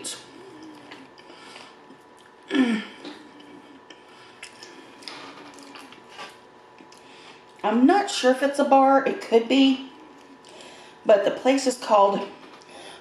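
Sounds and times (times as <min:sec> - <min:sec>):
person humming mm: 0:00.0 - 0:01.4
eating mouth sounds: 0:00.0 - 0:02.4, 0:03.0 - 0:07.6.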